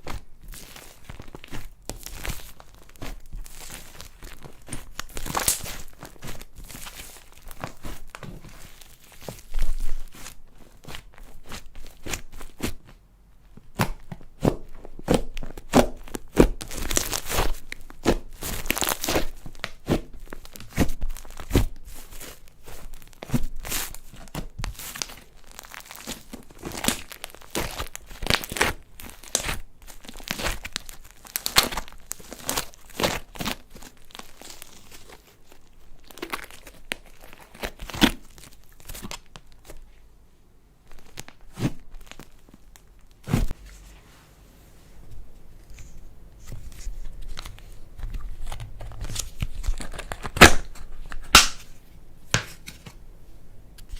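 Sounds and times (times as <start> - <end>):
slime crackling and popping: 0.5 - 10.2, 15.0 - 23.8, 24.7 - 35.0, 47.0 - 51.8.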